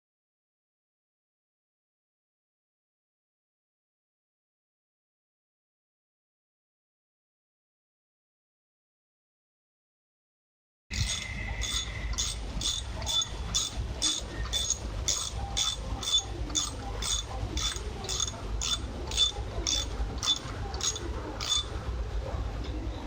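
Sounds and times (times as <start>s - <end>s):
mechanical clicking: 11.0s - 21.7s.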